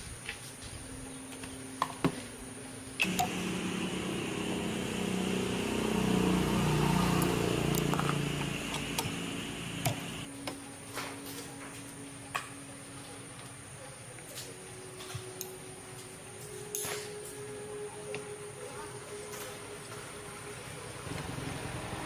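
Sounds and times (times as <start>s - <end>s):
small motor running: 3.0s - 10.3s.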